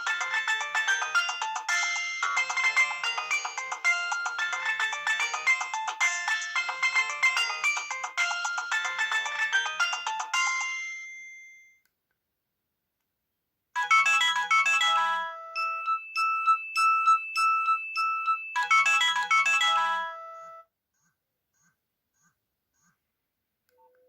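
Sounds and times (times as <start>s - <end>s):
mobile phone ringtone melody: 0.0s - 11.8s, 13.8s - 20.6s.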